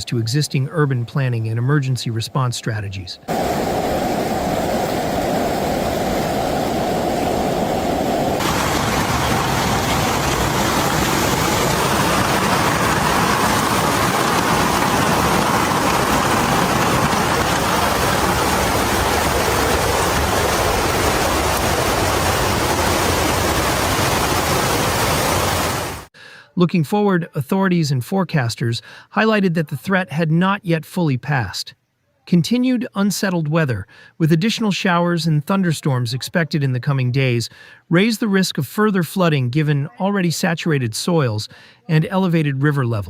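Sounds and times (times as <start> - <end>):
water rushing: 3.3 - 26.1.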